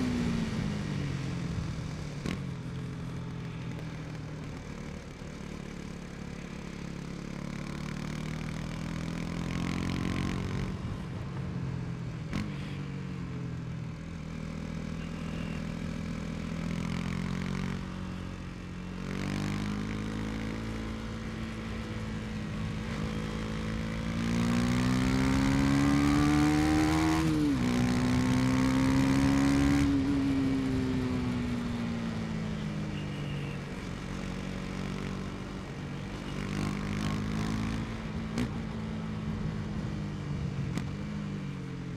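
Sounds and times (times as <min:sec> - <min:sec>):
motorcycle engine revving: 0:19.0 - 0:35.6, 0:36.2 - 0:38.8.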